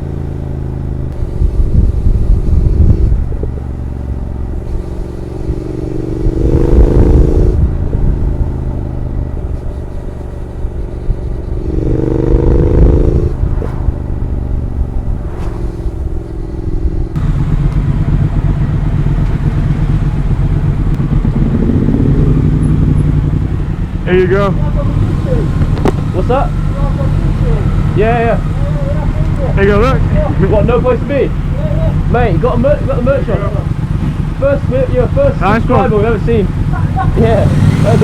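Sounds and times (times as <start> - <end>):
sharp exhaust cracks: 0.0 - 23.8
motorcycle engine revving: 0.0 - 38.0.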